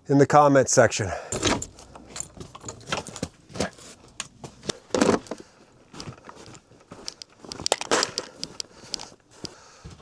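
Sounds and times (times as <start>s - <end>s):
objects knocking and clattering: 1.3s - 5.4s.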